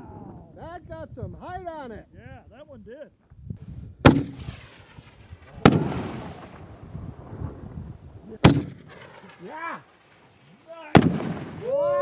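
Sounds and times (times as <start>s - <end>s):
firework bangs: 4.0s - 11.8s.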